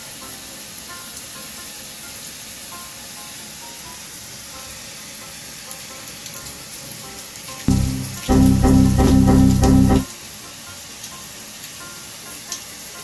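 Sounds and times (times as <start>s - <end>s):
faint background music: 0.0s - 11.2s
loud music: 7.7s - 10.1s.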